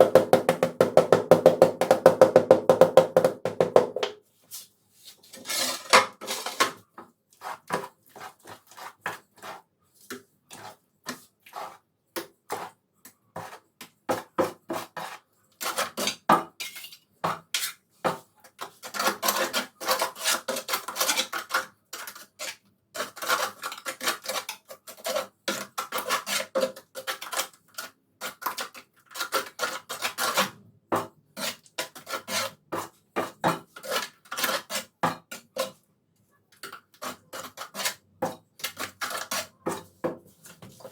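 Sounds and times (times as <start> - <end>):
hand tools scraping ceramic tile: 5.0 - 35.8, 36.6 - 40.9.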